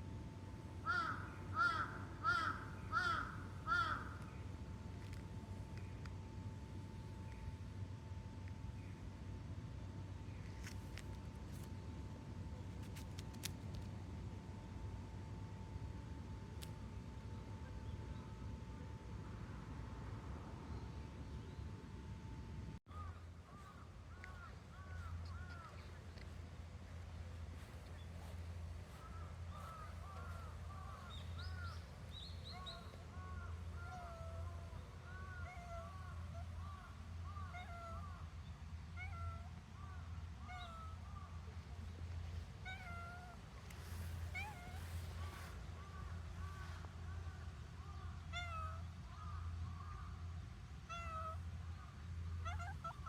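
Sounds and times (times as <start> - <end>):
steady low hum: 0.0 - 53.0
cats meowing: 33.5 - 36.6, 38.9 - 39.6, 42.6 - 45.1, 48.2 - 48.9, 50.8 - 51.5, 52.4 - 53.0.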